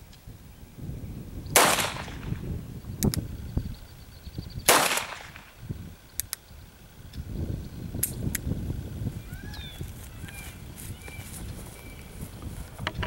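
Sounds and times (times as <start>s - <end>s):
revolver shots with echo: 1.6s - 2.5s, 4.6s - 5.6s
faint sharp clicks: 3.0s - 3.2s, 6.2s - 6.4s.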